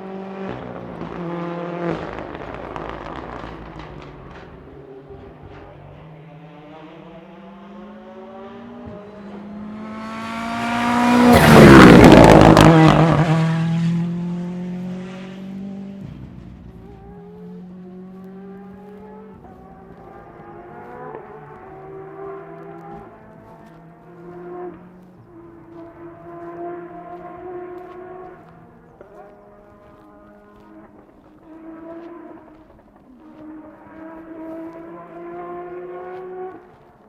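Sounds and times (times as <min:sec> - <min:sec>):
rally car engine passing by: 0:00.0 - 0:37.0.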